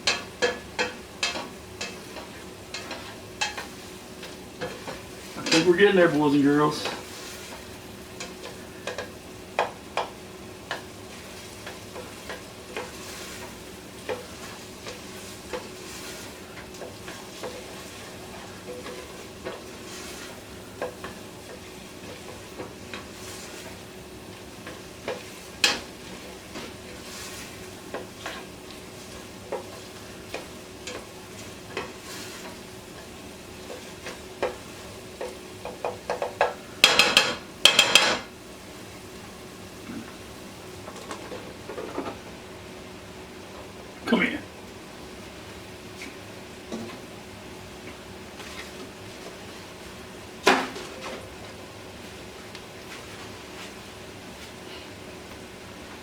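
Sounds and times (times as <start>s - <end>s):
spoon stirring and scraping pot: 0.0s - 10.1s
onions sizzling in butter: 0.0s - 56.0s
utensil knocking against pot: 35.6s - 38.2s.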